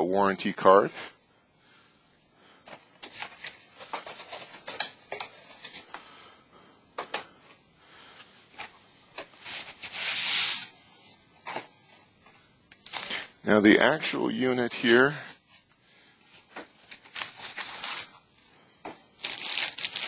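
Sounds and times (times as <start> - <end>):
packaging taps and rustles: 2.7 - 6.1
packaging rustling scrape: 3.0 - 6.0, 8.6 - 10.8, 12.8 - 13.3, 16.3 - 18.2, 19.2 - 20.0.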